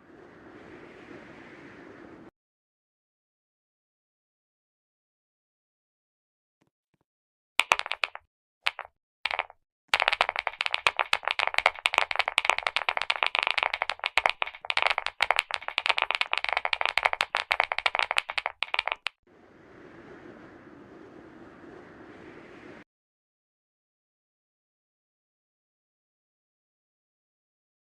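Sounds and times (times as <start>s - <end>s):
faint steady hiss: 0.0s - 2.3s
fast keyboard typing clicks: 7.6s - 19.2s.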